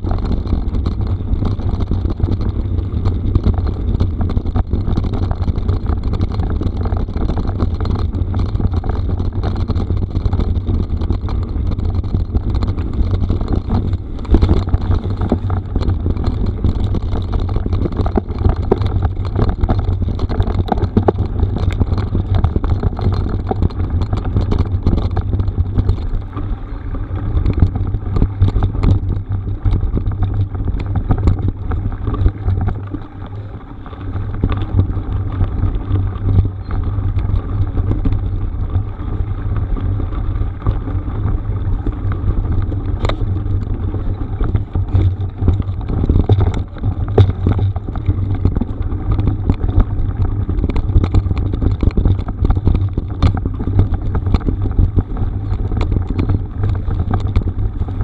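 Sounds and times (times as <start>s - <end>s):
tyres clicking on gravel: 0.0s - 58.0s
wind rumble on microphone: 0.0s - 58.0s.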